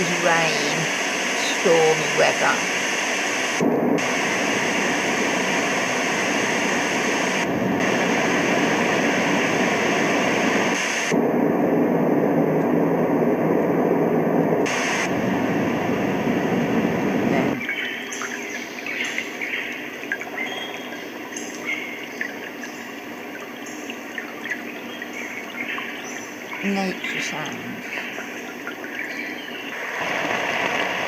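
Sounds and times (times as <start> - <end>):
recorded rain hiss: 0.0 - 31.0
trickling water sound: 17.6 - 26.6, 27.8 - 31.0.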